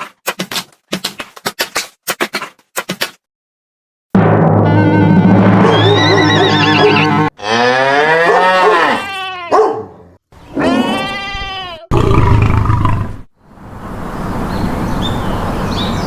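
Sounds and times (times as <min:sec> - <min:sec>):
cow mooing: 0:05.7 - 0:09.3.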